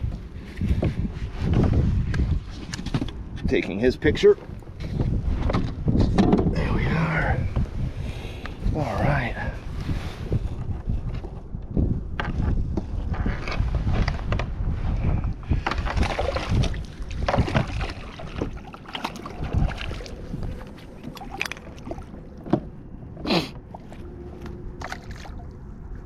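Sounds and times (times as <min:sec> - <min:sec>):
wind buffeting microphone: 0:00.0 - 0:26.0
water slapping kayak hull: 0:15.5 - 0:26.0
knocks and splashes: 0:15.6 - 0:22.9, 0:23.6 - 0:25.6.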